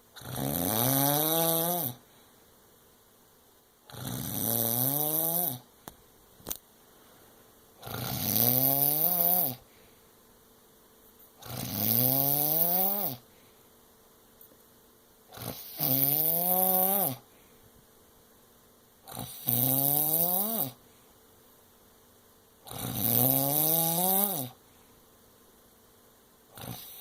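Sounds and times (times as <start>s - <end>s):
loud whining snoring: 0.1s - 2.0s, 3.9s - 5.7s, 7.8s - 9.6s, 11.4s - 13.2s, 15.3s - 17.2s, 19.0s - 20.8s, 22.6s - 24.6s, 26.5s - 27.0s.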